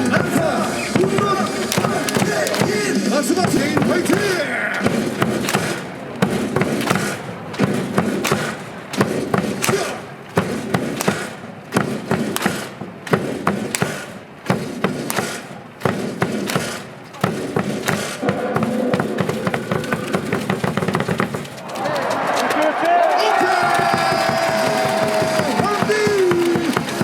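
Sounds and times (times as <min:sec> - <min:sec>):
cheer music: 0:00.0 - 0:11.4, 0:17.6 - 0:27.0
crowd chanting: 0:00.0 - 0:27.0
crowd clapping in rhythm: 0:00.0 - 0:27.0.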